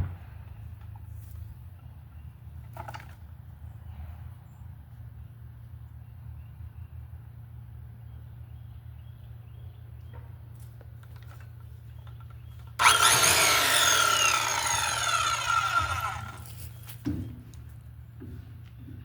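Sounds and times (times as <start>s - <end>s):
power saw cutting: 12.8s - 16.5s.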